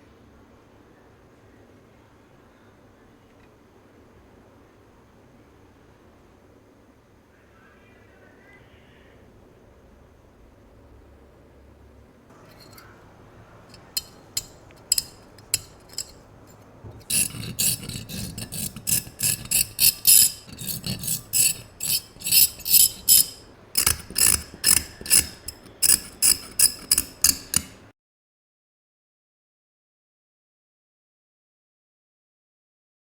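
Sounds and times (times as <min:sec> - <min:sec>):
tool scraping metal: 0:12.4 - 0:12.9, 0:13.6 - 0:27.9.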